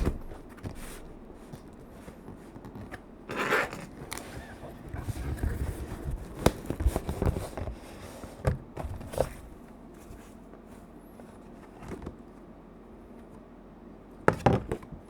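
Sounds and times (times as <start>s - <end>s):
packaging scraping and rustling: 0.0s - 9.6s.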